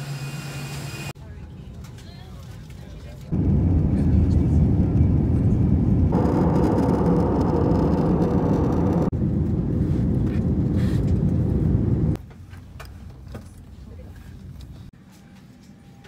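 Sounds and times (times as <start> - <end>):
jet engine and airflow rumble: 3.2 - 12.2.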